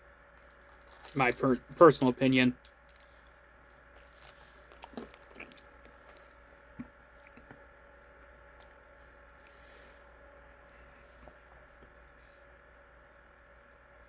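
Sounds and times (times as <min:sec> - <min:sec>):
low steady hum: 0:00.0 - 0:14.0
chewing and wet mouth sounds: 0:00.4 - 0:01.4, 0:02.6 - 0:12.0.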